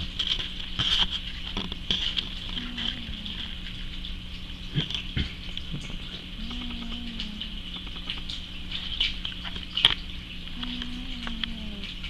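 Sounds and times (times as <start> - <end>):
cat snoring: 6.4 - 7.6.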